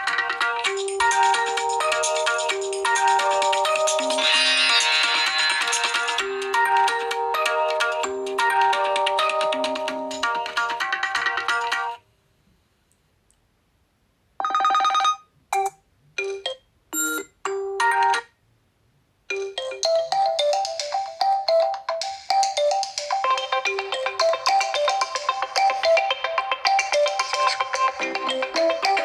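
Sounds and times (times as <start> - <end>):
melodic phone ringtone: 0.0 - 11.9, 14.4 - 18.3, 19.3 - 29.0
ringtone with quick repeated notes: 0.0 - 12.0, 14.4 - 18.4, 19.3 - 29.0
chime notes: 3.0 - 10.2.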